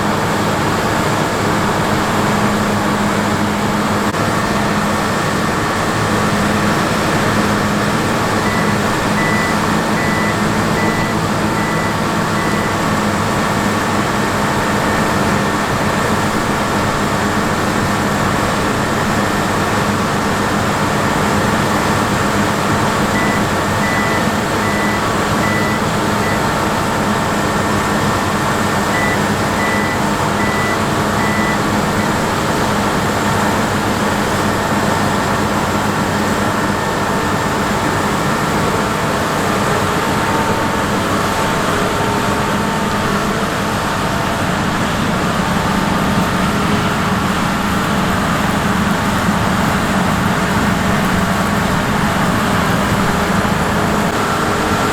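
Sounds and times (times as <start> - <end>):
combine harvester droning: 0.0 - 54.9
high warning beeps: 8.1 - 13.2, 22.9 - 26.6, 28.8 - 32.4.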